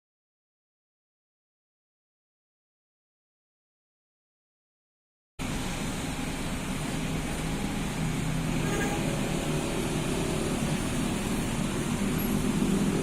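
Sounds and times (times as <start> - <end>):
car engine running: 5.4 - 13.0
road noise: 5.4 - 13.0.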